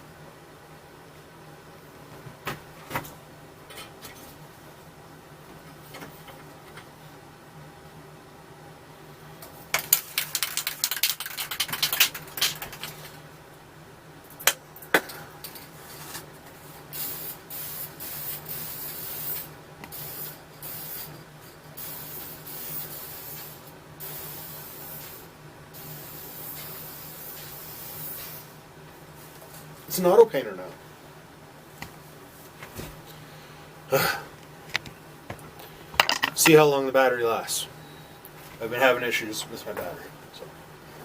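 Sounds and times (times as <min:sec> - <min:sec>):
spray can ball rattling: 0:09.8 - 0:12.9
aerosol spray hissing: 0:17.0 - 0:21.1, 0:21.8 - 0:28.5.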